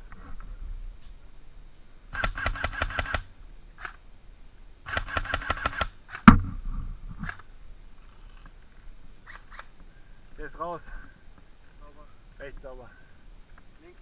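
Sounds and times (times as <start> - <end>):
full-auto airsoft gunfire: 2.2 - 3.3, 4.9 - 6.5.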